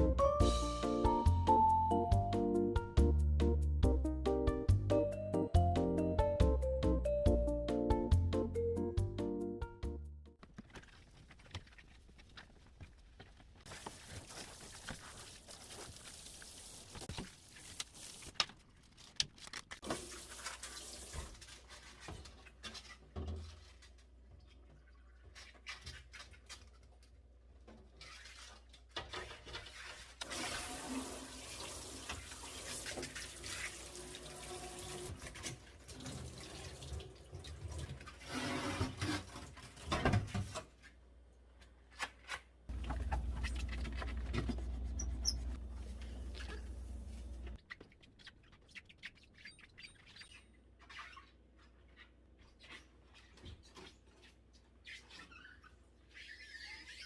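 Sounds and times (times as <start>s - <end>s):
tap water running into sink: 30.2s - 38.2s, 42.7s - 47.5s.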